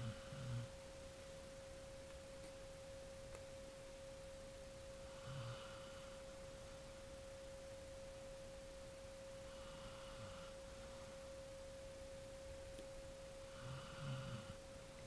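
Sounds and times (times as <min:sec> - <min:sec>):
dog snoring softly: 0:00.0 - 0:00.8, 0:05.0 - 0:06.2, 0:09.4 - 0:10.9, 0:13.5 - 0:14.6.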